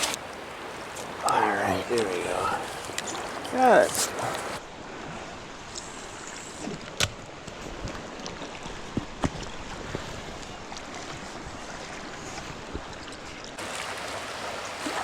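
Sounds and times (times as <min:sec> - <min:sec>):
river water rushing: 0:00.0 - 0:04.6, 0:13.6 - 0:15.0.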